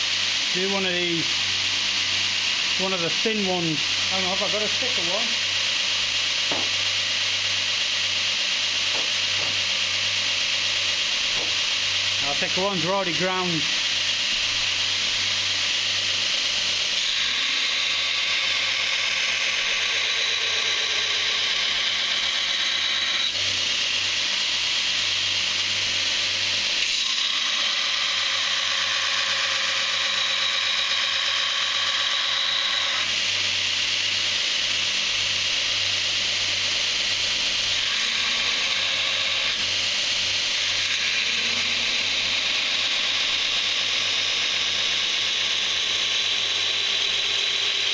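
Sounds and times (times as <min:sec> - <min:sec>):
belt grinder grinding steel: 0:35.2 - 0:47.9.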